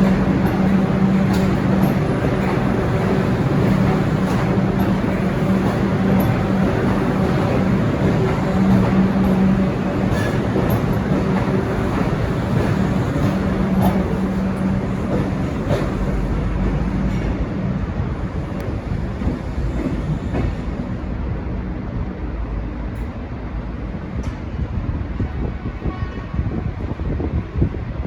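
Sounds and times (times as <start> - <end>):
rail clacks: 0.0 - 21.2
train carriages rolling over rails: 0.0 - 21.2
low train drone: 0.0 - 28.0.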